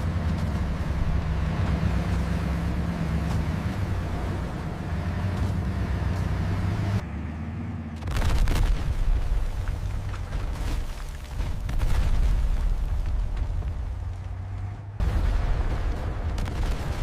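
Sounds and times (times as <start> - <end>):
deep steady rumble: 0.0 - 17.0
loud blast with crackle: 15.0 - 17.0.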